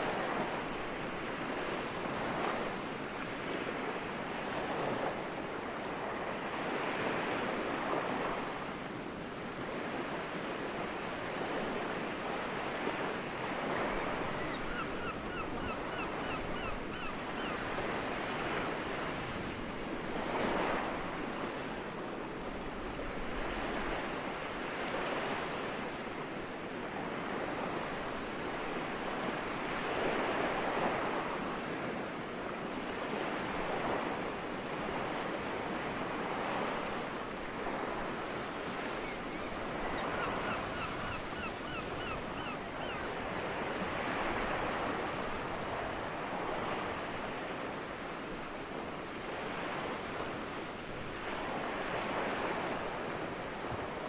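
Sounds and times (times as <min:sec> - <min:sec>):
waves washing onto shore: 0:00.0 - 0:16.9.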